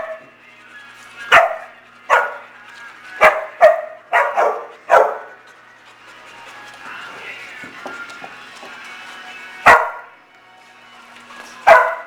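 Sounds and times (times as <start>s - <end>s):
dog barking: 0.0s - 0.3s, 1.3s - 2.5s, 3.2s - 5.4s, 9.7s - 10.1s, 11.7s - 12.0s.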